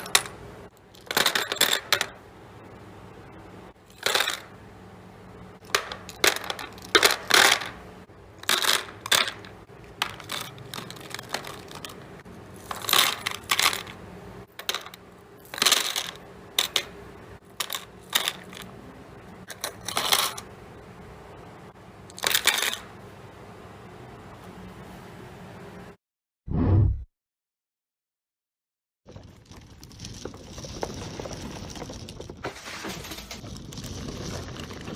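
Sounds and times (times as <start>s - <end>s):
hard items clinking: 8.4s - 18.8s, 19.4s - 20.5s.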